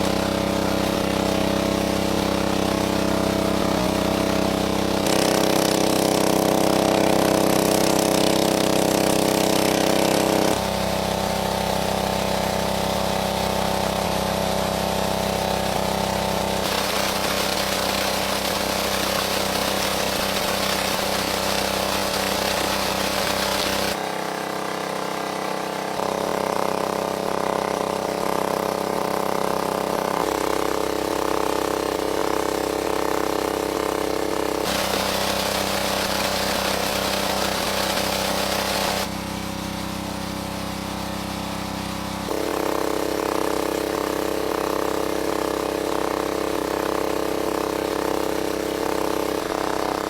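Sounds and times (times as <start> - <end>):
motor-like hum: 0.0 - 50.0
hiss: 16.6 - 24.0, 34.6 - 39.1.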